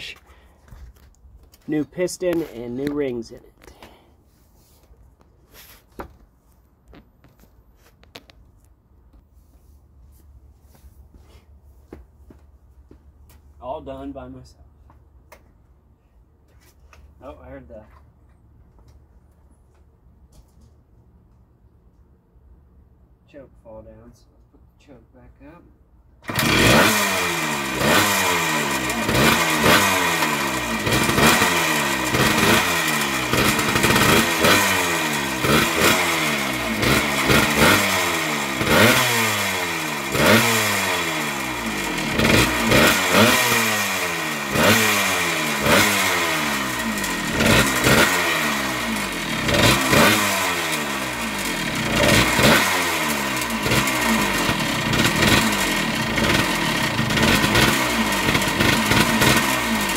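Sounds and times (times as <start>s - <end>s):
two-stroke engine revving: 26.2s - 59.9s.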